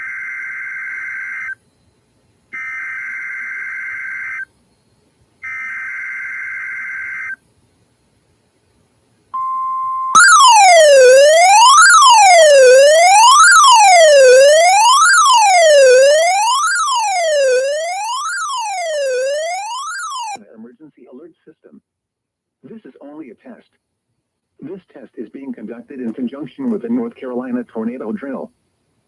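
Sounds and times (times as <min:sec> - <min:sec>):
steady alert tone: 0:09.4 - 0:20.4
electronic wail sweeping up and down: 0:10.2 - 0:20.4.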